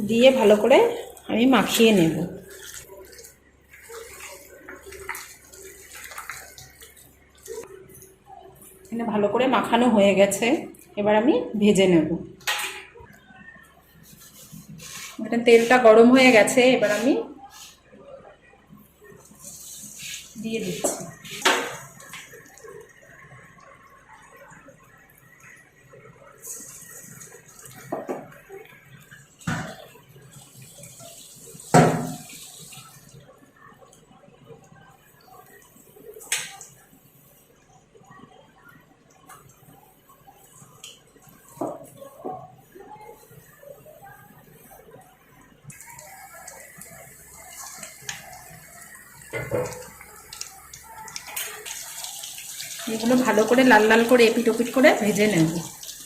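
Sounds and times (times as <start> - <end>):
oil sizzling: 0.0 - 9.0, 19.0 - 33.8, 39.2 - 44.8, 45.6 - 56.0
batter splashing into oil: 1.0 - 7.6
food sizzling in hot oil: 45.7 - 56.0.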